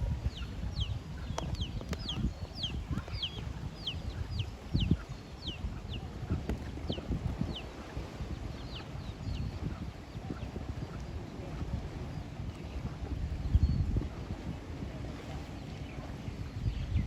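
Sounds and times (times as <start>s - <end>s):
chicks peeping: 0.2s - 7.7s, 8.5s - 11.0s.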